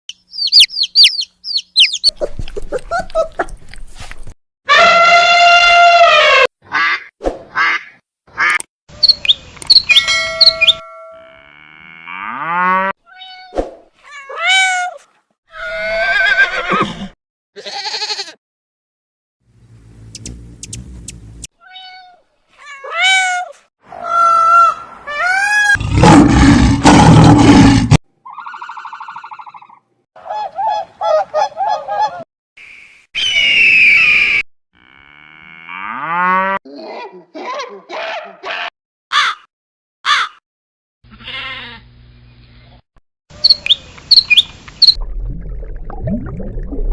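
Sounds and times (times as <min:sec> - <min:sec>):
bird squawks and cries: 0:00.4 - 0:02.1, 0:40.1 - 0:40.4
rapid repeated bird notes: 0:20.1 - 0:21.3, 0:43.4 - 0:45.0.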